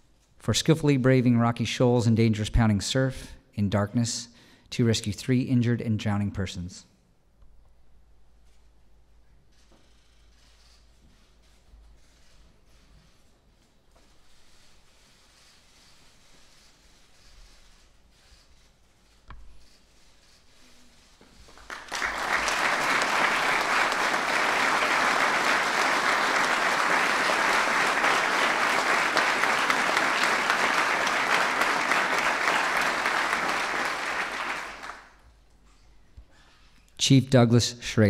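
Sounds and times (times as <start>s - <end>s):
audience applauding: 21.5s - 35.2s.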